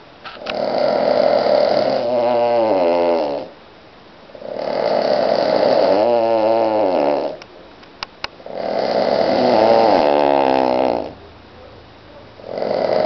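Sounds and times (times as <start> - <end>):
dog snoring: 0.4 - 3.6, 4.3 - 7.4, 8.4 - 11.2, 12.4 - 13.0.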